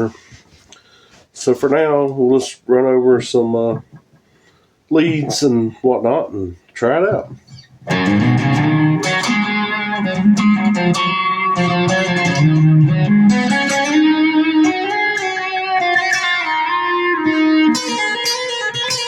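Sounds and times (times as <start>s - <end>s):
electric guitar lead lines: 7.3s - 19.0s.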